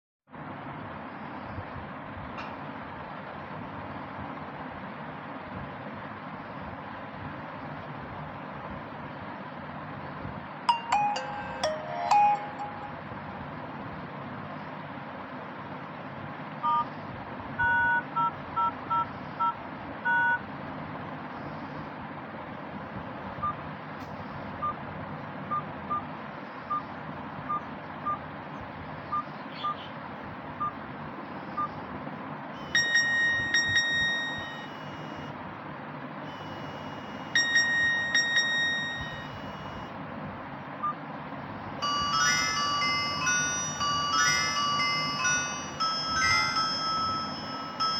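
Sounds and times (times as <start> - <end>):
phone keypad beeps: 10.7 - 13.0, 16.6 - 16.9, 17.6 - 20.4, 31.5 - 31.8, 32.6 - 35.3, 36.3 - 39.9
bell-like ringtone phrases: 10.7 - 13.2, 32.6 - 35.3, 36.4 - 39.9, 41.8 - 47.9
chiming ringtone melody: 10.7 - 13.4, 32.6 - 35.3, 36.3 - 39.9, 41.8 - 47.9.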